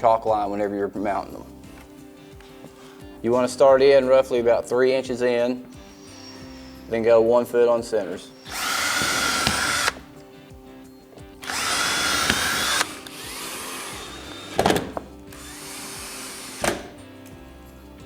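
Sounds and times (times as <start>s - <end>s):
power drill driving a screw: 8.4s - 10.1s, 11.4s - 17.0s.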